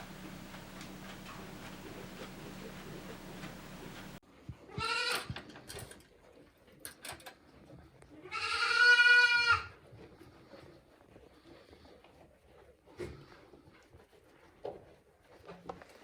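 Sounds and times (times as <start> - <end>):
goat bleating: 4.7 - 5.3, 8.2 - 9.7.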